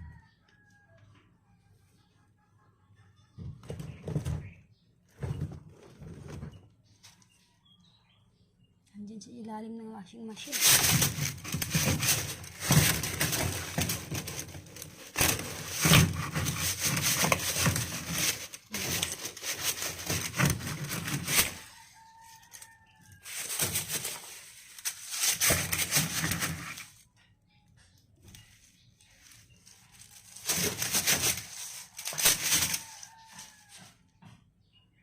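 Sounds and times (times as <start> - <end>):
distant rooster crowing: 0.0 - 1.6, 10.6 - 24.4, 30.5 - 34.4
rustling and knocking: 3.4 - 7.2, 10.4 - 27.0, 28.3 - 34.5.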